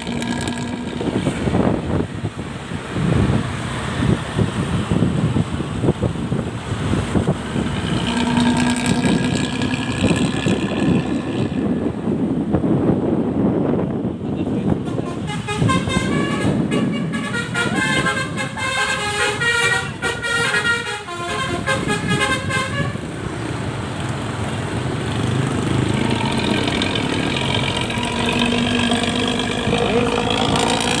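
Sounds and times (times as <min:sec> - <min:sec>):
engine through loud open exhaust: 0:00.0 - 0:31.0
musical horn playing a tune: 0:14.9 - 0:23.0.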